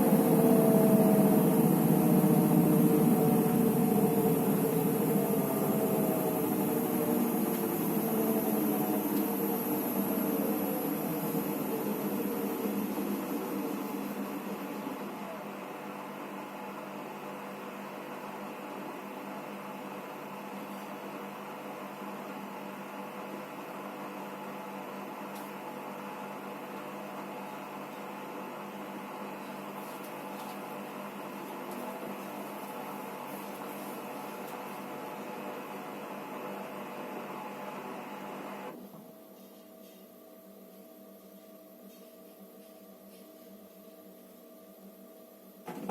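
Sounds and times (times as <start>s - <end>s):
washing machine motor hum: 0.0s - 16.0s.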